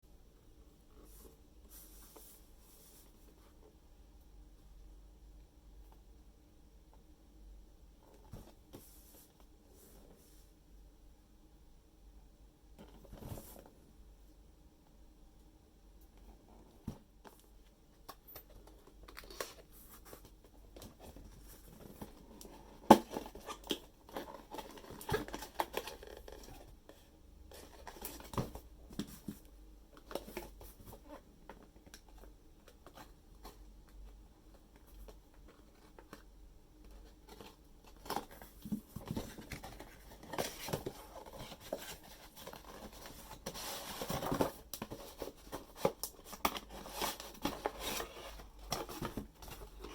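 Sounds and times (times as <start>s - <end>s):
packaging rustling crinkle: 18.4s - 26.8s, 27.5s - 49.9s.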